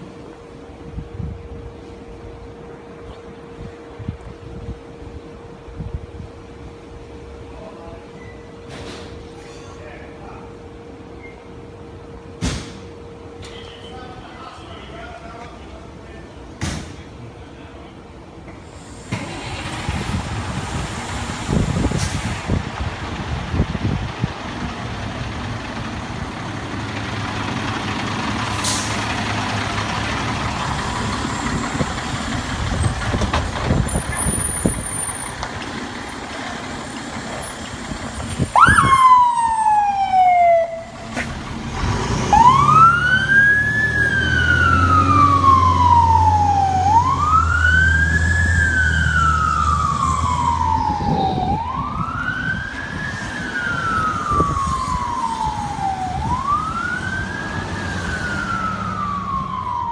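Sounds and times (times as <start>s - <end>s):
fire engine rumbling: 0.0s - 59.9s
siren wailing: 37.8s - 41.1s, 42.3s - 59.9s.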